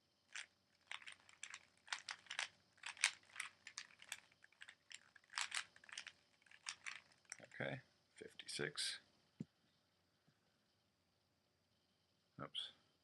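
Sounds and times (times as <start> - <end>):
puzzle cube plastic clicks: 0.3 - 7.5.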